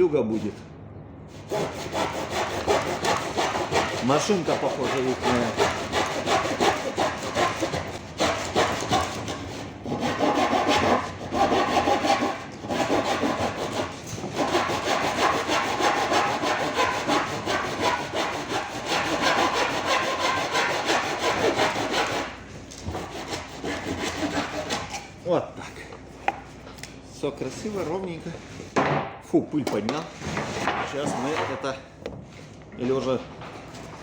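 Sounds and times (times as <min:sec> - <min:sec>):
hand saw cutting wood: 0:01.4 - 0:25.1.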